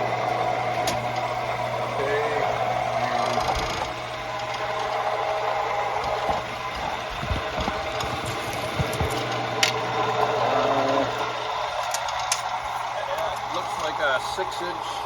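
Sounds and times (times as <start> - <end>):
machinery hum: 0.0 - 15.0.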